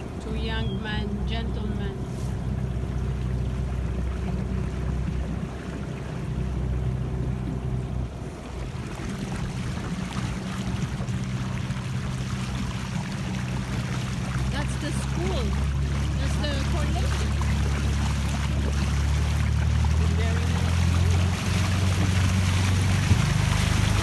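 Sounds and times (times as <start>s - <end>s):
motorboat engine humming: 0.0s - 24.0s
water splashing: 0.0s - 24.0s
wind on microphone: 17.0s - 24.0s.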